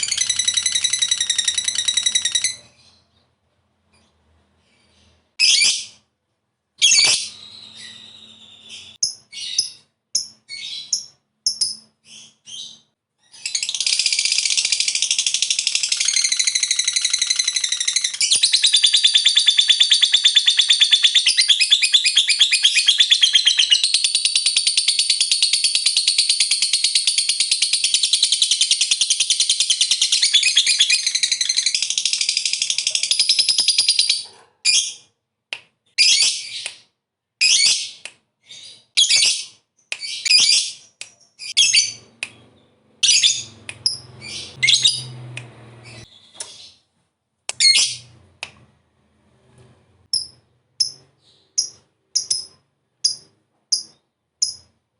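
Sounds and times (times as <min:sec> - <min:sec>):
lovebird chirping bursts: 0:06.8 - 0:35.0, 0:37.4 - 0:45.1
lovebird chattering trill: 0:13.5 - 0:34.3, 0:51.6 - 0:54.7.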